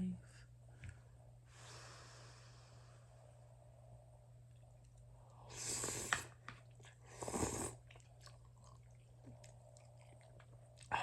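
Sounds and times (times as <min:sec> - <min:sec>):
noodle slurping: 0:05.5 - 0:11.0
wet chewing clicks: 0:05.9 - 0:11.0.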